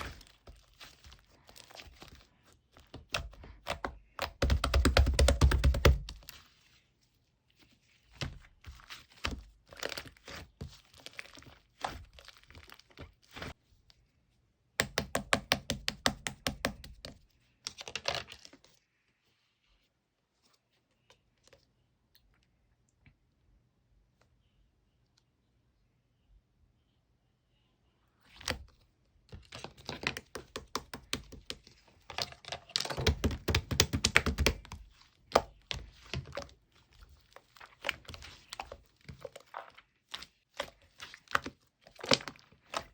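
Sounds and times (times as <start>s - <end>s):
slime popping and crackling: 29.9s - 36.5s.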